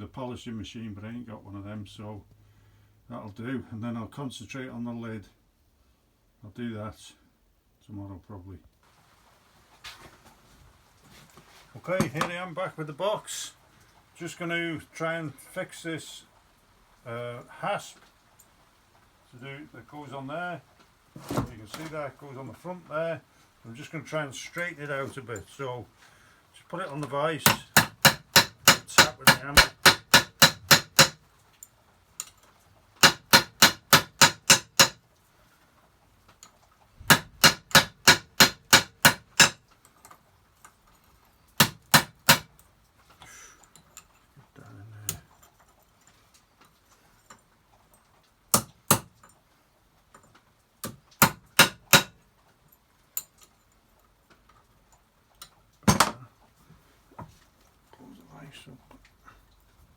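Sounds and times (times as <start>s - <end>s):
hammer tapping on metal: 27.5s - 31.2s, 33.0s - 35.0s, 37.1s - 39.6s, 41.6s - 42.5s, 48.6s - 49.2s, 50.8s - 52.2s.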